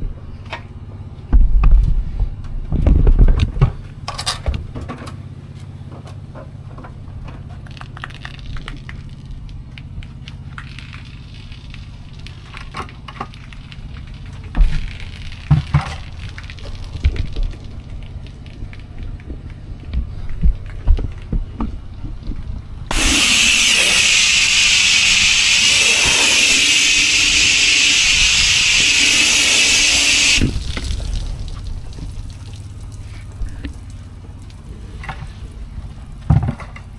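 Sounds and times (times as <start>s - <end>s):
high-pressure water jet hissing: 22.9s - 33.1s
pressure washer engine running: 22.9s - 33.4s.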